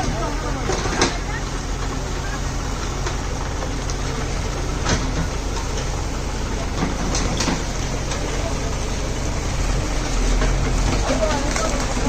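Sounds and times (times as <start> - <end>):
heavy diesel machinery running: 0.0 - 12.0
sharp knocks and clanks: 4.8 - 5.9, 6.6 - 8.3.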